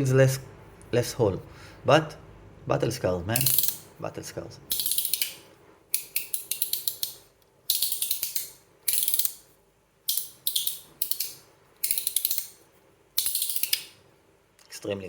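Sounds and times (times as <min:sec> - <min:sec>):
metal slider clicking: 0:03.4 - 0:03.8, 0:04.7 - 0:09.4, 0:10.1 - 0:12.6.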